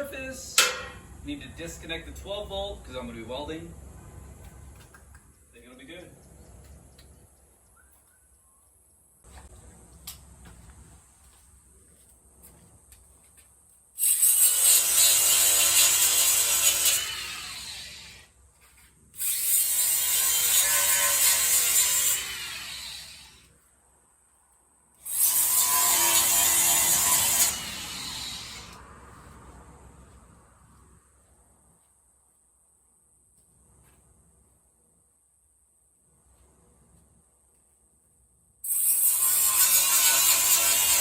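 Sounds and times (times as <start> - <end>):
angle grinder on steel: 14.0 - 18.3, 19.2 - 23.5, 25.0 - 28.8, 38.7 - 41.0.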